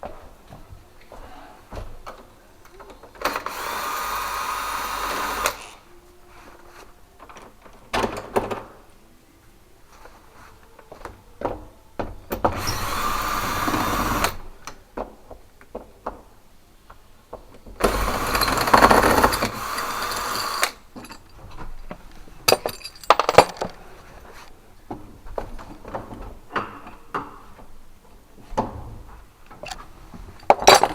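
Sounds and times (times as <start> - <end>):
power drill running: 3.2 - 5.8, 12.5 - 14.4, 17.8 - 20.8.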